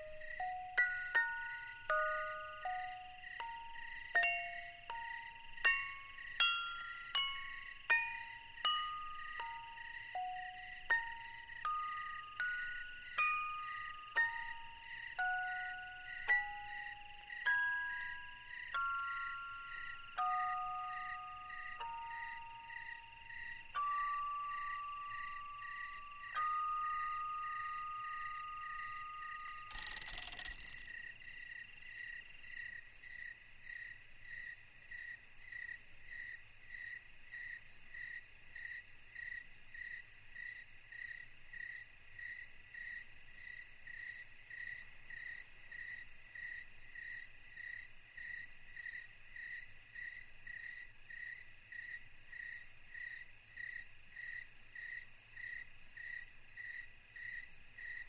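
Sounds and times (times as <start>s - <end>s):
faint hiss: 0.0s - 30.9s
crickets chirping: 0.0s - 58.0s.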